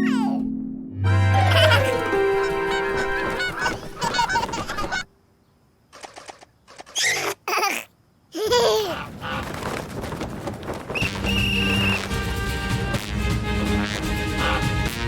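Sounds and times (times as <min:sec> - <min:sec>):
cartoon baby giggling and babbling: 0:00.0 - 0:00.5, 0:01.4 - 0:05.0, 0:07.0 - 0:09.1.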